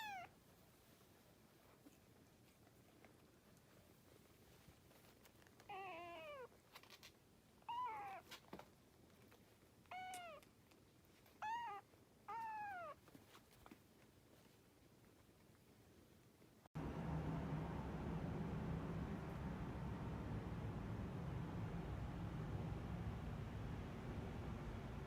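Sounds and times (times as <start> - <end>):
kitten meowing: 9.9 - 10.4, 11.4 - 13.0.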